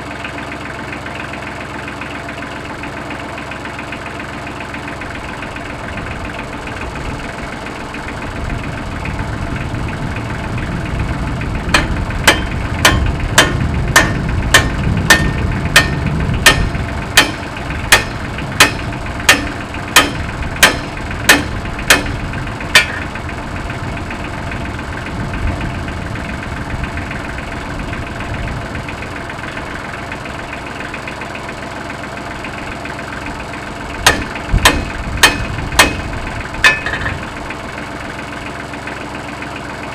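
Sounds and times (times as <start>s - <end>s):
tractor engine idling: 0.0s - 39.9s
loud sharp knocks: 11.8s - 23.2s, 34.0s - 37.3s.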